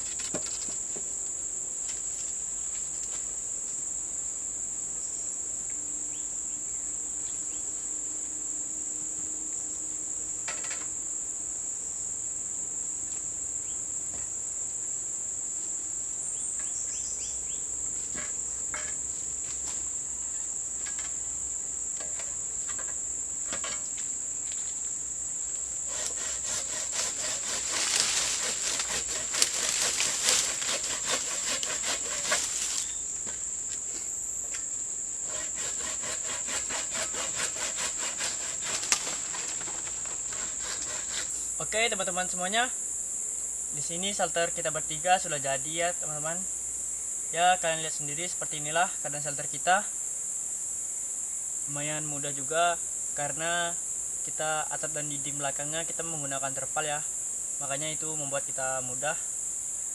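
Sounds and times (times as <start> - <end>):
rustling and scraping: 0.0 - 1.1, 17.9 - 20.0, 22.0 - 25.0, 25.8 - 34.7, 35.3 - 41.5
insects droning: 0.0 - 59.9.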